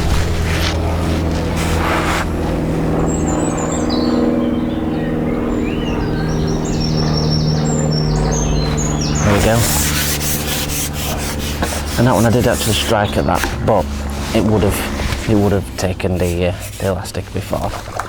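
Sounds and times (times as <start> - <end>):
rustling handling noise: 0.0 - 2.9, 9.3 - 18.0
steady low hum: 0.0 - 18.0
small bird chirping: 3.0 - 10.2.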